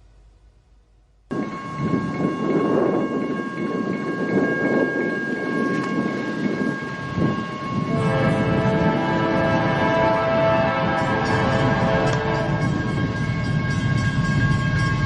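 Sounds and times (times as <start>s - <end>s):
train rumbling past: 1.3s - 15.0s
high train horn chord: 7.3s - 14.6s.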